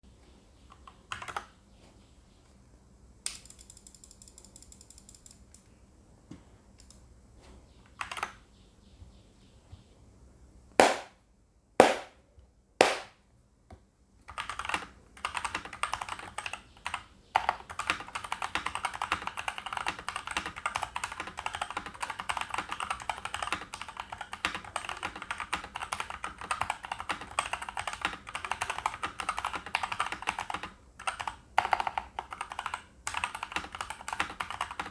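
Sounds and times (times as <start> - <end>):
mechanical keyboard typing: 0.8 - 1.5, 14.3 - 34.9.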